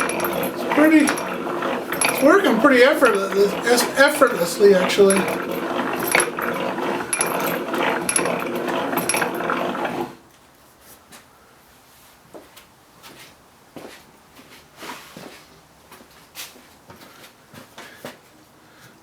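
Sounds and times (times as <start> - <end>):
hand-cranked drill gears whirring: 0.0 - 10.2.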